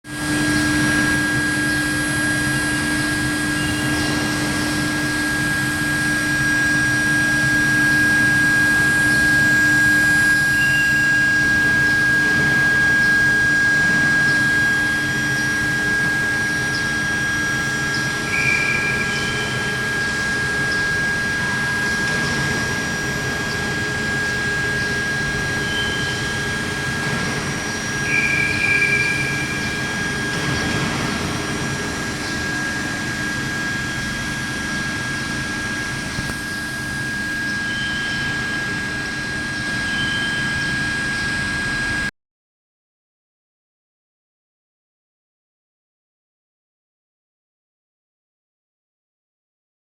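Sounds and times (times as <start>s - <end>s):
loud mechanical hum: 0.0s - 42.1s
machine high-pitched whine: 0.0s - 42.1s
brief high squeals: 0.4s - 30.3s, 31.8s - 41.7s.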